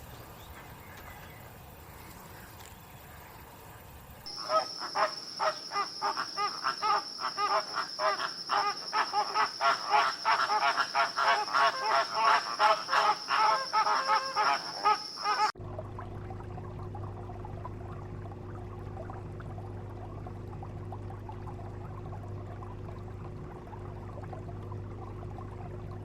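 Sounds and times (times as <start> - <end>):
birds squawking: 4.3 - 15.5.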